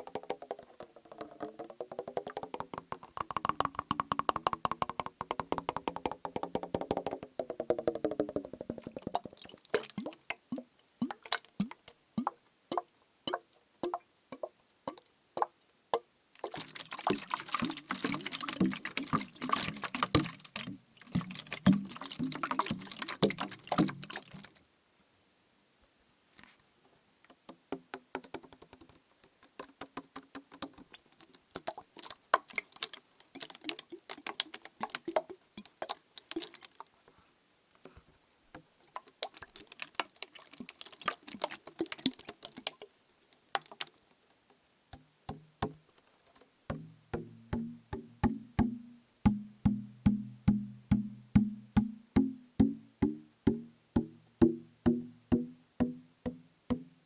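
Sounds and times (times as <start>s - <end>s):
irregular clicks: 0.0s - 6.7s
hollow knocks on plastic bottle: 0.0s - 8.9s, 18.0s - 24.2s, 45.0s - 45.8s, 46.7s - 57.0s
liquid sloshing in bottle: 16.4s - 24.6s.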